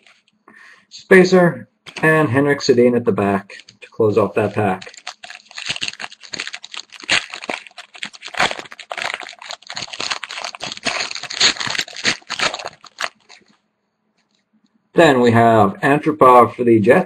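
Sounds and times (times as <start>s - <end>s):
foil wrapper crinkling: 3.5s - 13.6s.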